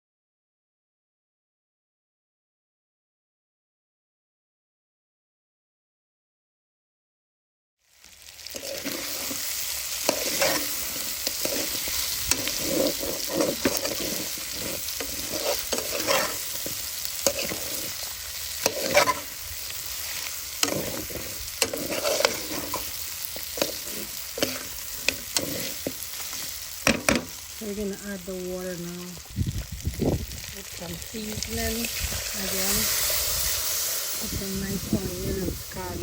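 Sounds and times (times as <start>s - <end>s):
meat sizzling in hot oil: 7.8s - 36.0s
utensil scraping a pot: 8.5s - 27.2s.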